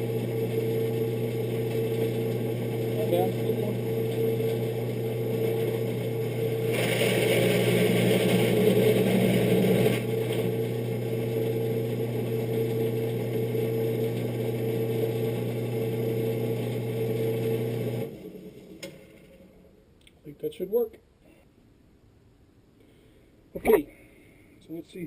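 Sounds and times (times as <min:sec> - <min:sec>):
electric tool motor hum: 0:00.0 - 0:18.9.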